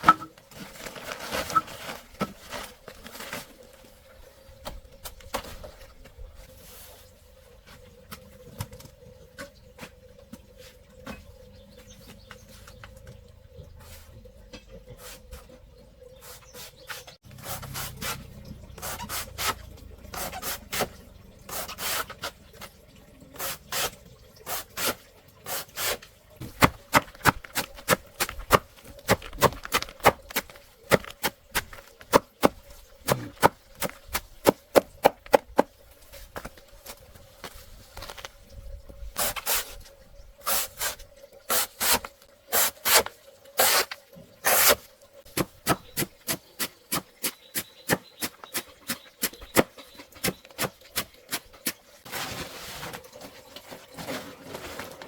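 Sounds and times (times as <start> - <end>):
rubbing and scraping: 47.9 - 55.0.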